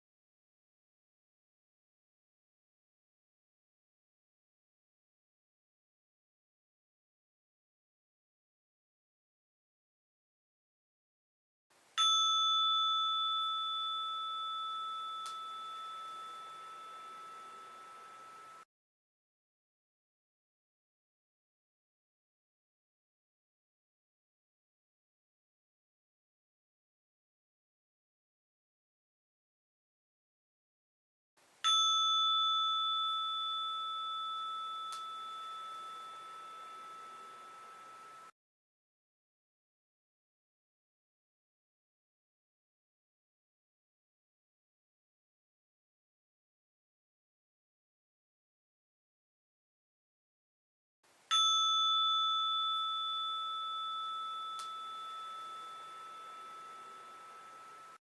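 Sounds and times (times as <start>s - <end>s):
bowl bell ringing: 12.0s - 18.7s, 31.6s - 38.4s, 51.3s - 58.0s.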